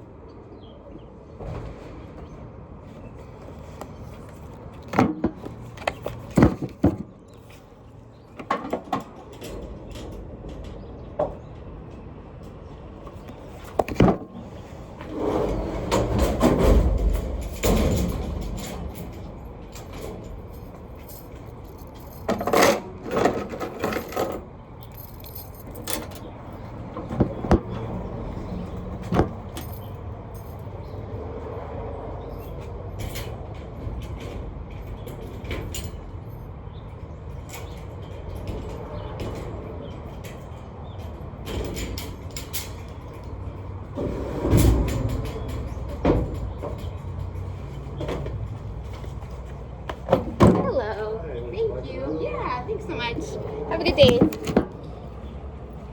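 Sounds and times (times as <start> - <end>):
objects clicking and knocking: 13.2 - 14.3.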